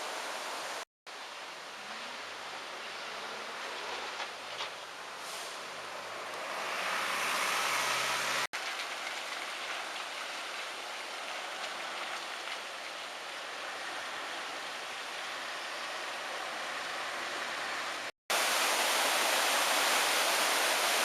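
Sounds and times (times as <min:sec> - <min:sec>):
steady outdoor hiss: 0:00.0 - 0:21.0
vehicle hum rising with hiss: 0:01.6 - 0:08.5.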